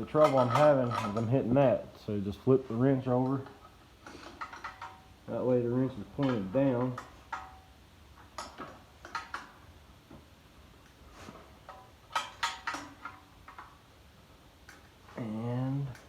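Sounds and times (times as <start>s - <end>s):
wrench clinking on metal: 0.0s - 1.5s, 3.0s - 5.2s, 5.9s - 9.6s, 11.7s - 13.8s.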